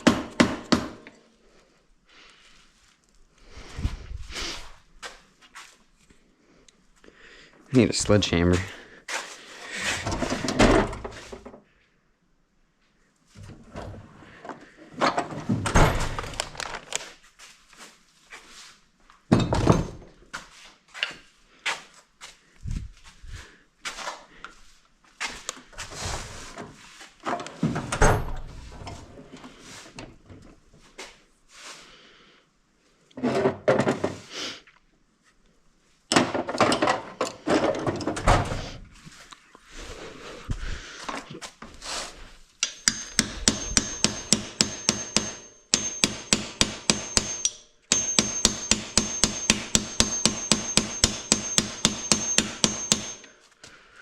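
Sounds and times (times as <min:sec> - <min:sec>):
hammer blows on metal: 0:42.6 - 0:53.3
metal tools clanking: 0:42.6 - 0:53.3.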